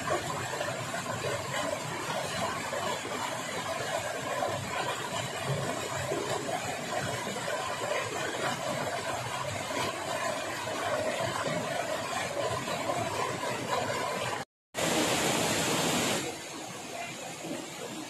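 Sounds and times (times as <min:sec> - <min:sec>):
stream water rushing: 0:14.8 - 0:18.0.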